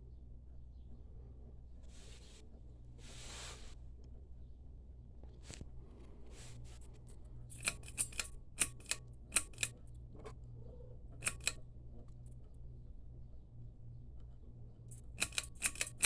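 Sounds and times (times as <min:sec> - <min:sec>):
sharp clicks: 0:07.5 - 0:09.8, 0:11.2 - 0:11.6, 0:14.9 - 0:16.0.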